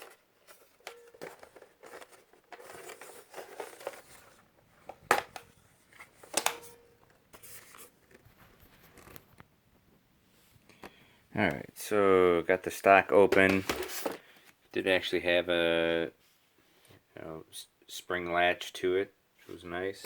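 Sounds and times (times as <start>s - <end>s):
plastic rifle handling rustle: 0.0s - 9.4s, 13.3s - 14.6s.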